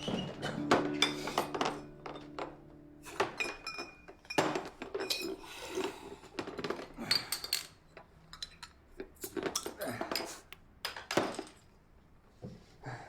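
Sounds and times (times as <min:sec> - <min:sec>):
soft background music: 0:00.0 - 0:04.1
dishes and glasses clinking: 0:00.0 - 0:05.4.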